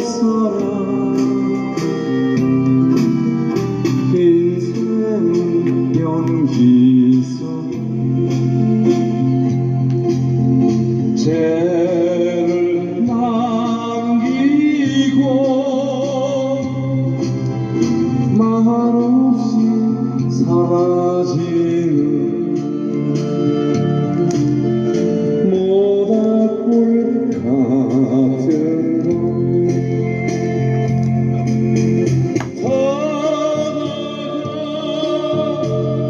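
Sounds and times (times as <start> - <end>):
person singing a folk ballad: 0.0 - 2.5, 4.0 - 8.1, 11.2 - 17.2, 18.2 - 23.0, 25.3 - 29.8, 32.6 - 36.0
instrumental backing music: 0.0 - 36.0.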